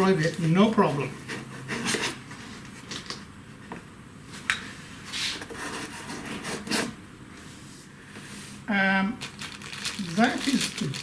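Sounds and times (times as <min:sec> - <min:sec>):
packing material scraping: 0:09.2 - 0:11.0.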